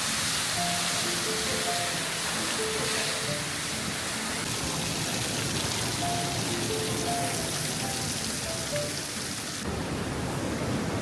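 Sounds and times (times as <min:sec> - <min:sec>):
waterfall rushing: 0:00.0 - 0:11.0
soft background music: 0:00.1 - 0:04.5, 0:05.9 - 0:09.7.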